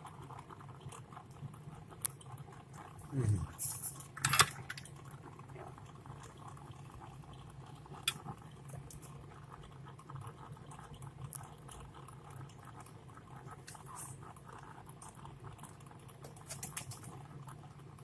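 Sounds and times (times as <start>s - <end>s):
low steady hum: 0.0s - 16.5s
small parts clicking and tapping: 3.6s - 5.0s, 16.2s - 17.2s.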